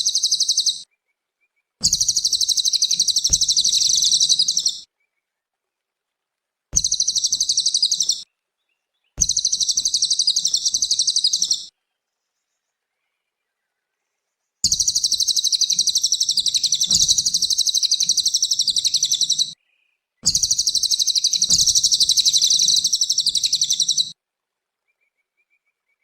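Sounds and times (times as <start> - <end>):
bird chattering song: 0.0 - 0.8, 1.8 - 4.8, 6.8 - 8.2, 9.2 - 11.7, 14.6 - 19.6, 20.2 - 24.1.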